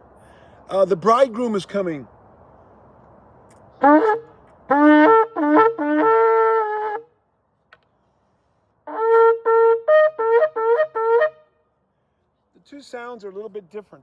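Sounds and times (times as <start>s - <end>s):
shofar blasts: 3.8s - 7.1s, 8.9s - 11.5s.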